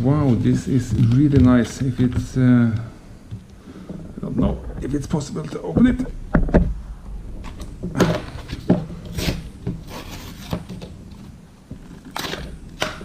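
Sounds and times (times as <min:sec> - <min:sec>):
packaging rubbing and scraping: 0:07.5 - 0:12.9.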